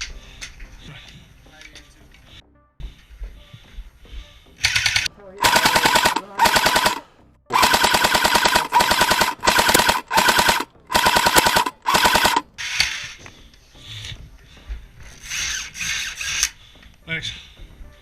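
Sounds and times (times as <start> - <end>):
scattered clatter: 4.6 - 12.4
airsoft gun automatic bursts: 4.6 - 12.5.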